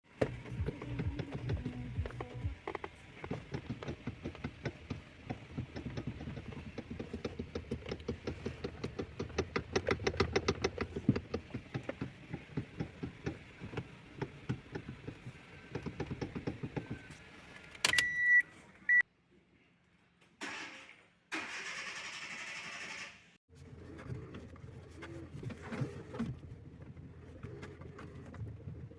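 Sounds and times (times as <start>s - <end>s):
power steering knocking: 0.1s - 17.1s.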